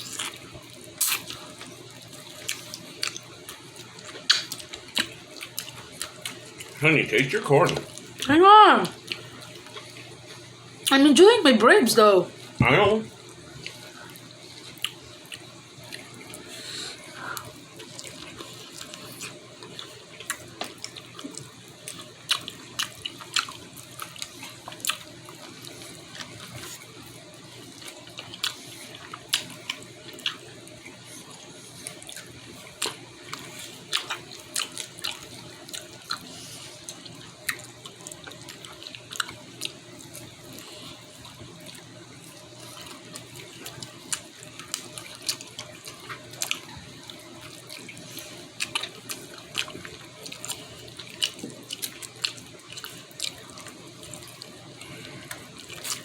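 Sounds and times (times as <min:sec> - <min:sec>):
wet chewing: 0:00.0 - 0:06.8, 0:07.6 - 0:11.0, 0:13.6 - 0:56.0
smacking clicks of eating: 0:02.4 - 0:06.8, 0:17.4 - 0:26.8.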